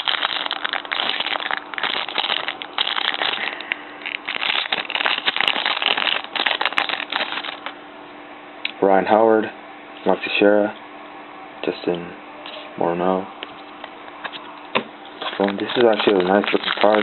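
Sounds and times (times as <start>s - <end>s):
wrapper crinkling and tearing: 0.0s - 7.7s, 15.1s - 17.0s
cards being handled: 13.4s - 17.0s.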